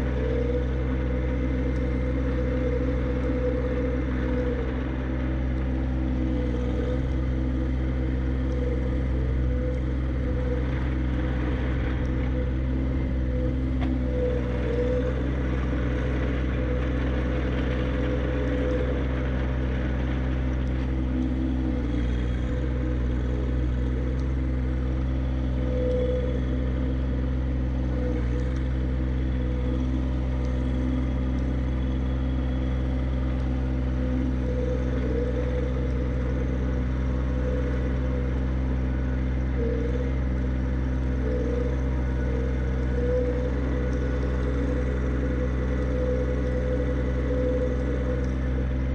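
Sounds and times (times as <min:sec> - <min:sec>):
tractor diesel engine running: 0:00.0 - 0:48.9.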